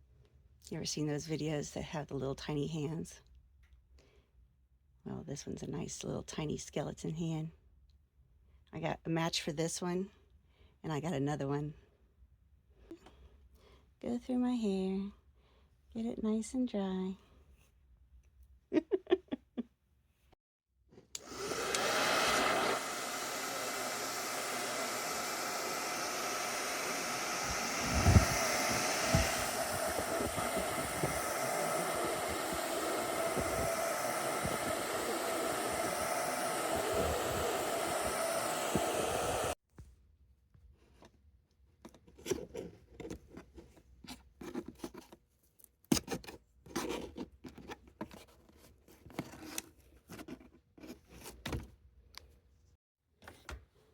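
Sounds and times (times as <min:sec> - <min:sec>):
hair dryer blowing: 0:21.2 - 0:39.6.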